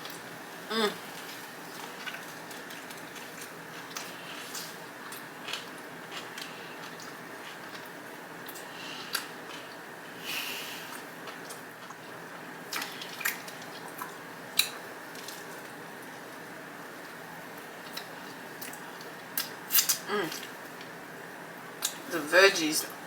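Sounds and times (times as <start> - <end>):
wet squishy chewing: 1.2 - 7.9, 12.7 - 15.7.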